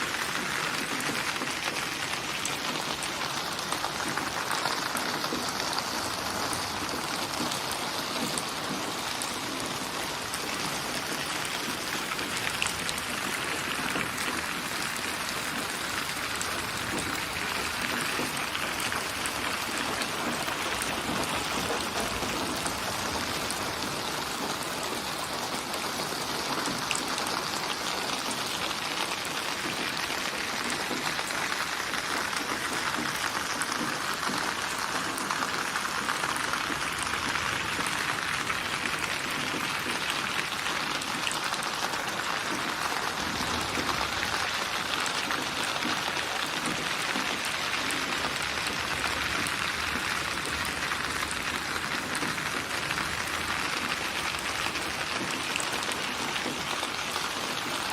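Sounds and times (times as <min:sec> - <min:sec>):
raindrops pattering on surface: 0:00.0 - 0:57.9
steady rain: 0:00.0 - 0:57.9.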